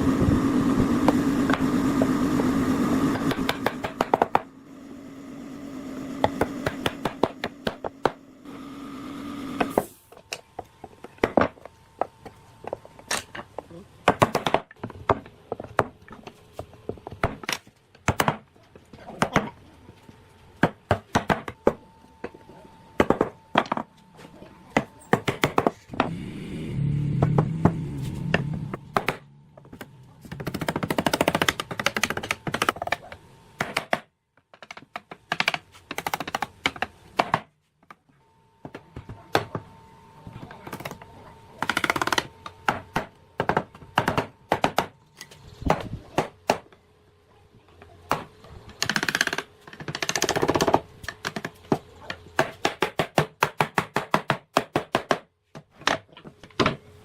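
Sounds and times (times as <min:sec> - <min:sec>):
noisy workshop bursts: 0:00.0 - 0:57.0.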